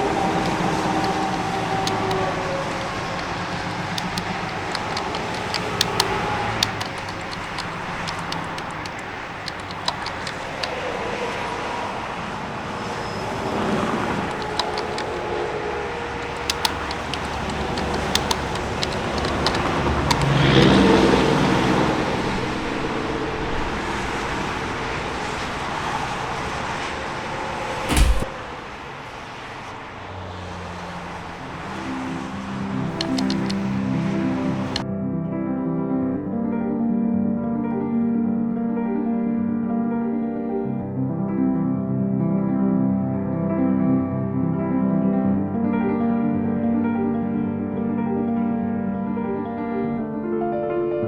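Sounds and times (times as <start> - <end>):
highway traffic rushing: 0.0 - 10.8, 14.3 - 15.3, 16.2 - 21.6, 27.9 - 34.8
sharp ticks: 0.4 - 10.8, 14.3 - 15.2, 16.2 - 20.9, 32.9 - 33.8
heavy thump: 27.9 - 28.4.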